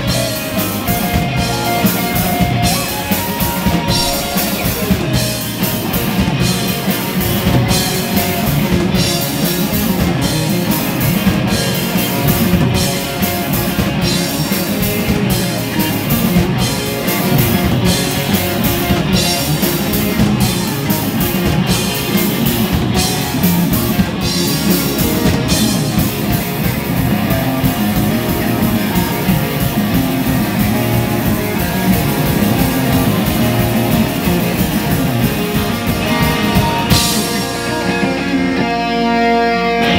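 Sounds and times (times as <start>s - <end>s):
cymbals ringing: 0.0s - 5.7s
live rock band playing: 0.0s - 39.9s.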